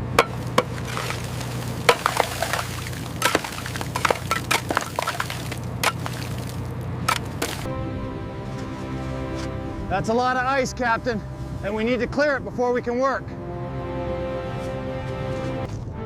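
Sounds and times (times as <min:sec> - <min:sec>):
ice cracking: 0:00.1 - 0:07.7.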